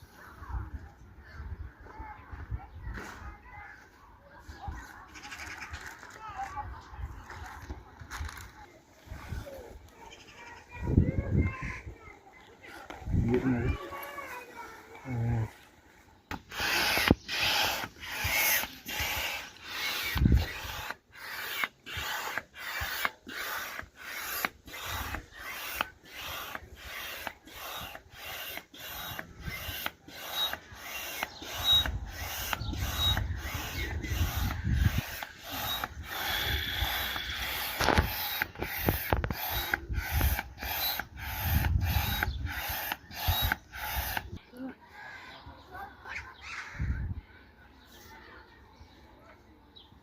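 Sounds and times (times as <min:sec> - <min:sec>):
hand air pump rasping strokes: 0:16.3 - 0:44.4.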